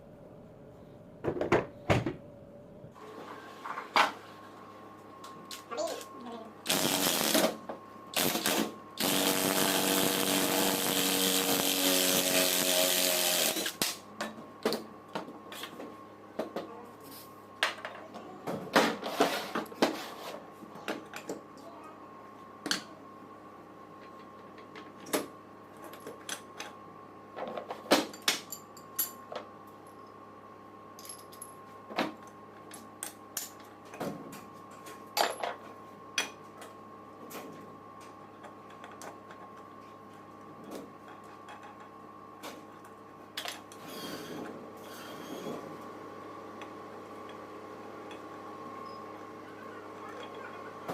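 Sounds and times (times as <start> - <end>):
power tool running: 6.7 - 7.5, 8.2 - 13.8.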